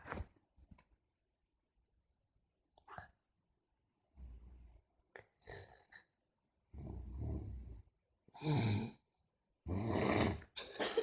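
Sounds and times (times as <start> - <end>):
person snoring: 8.4 - 9.0, 9.6 - 10.6.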